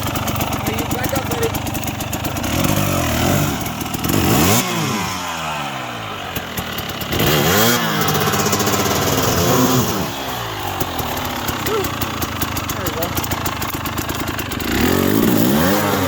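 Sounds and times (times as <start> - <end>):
dirt bike engine revving: 0.0 - 16.0.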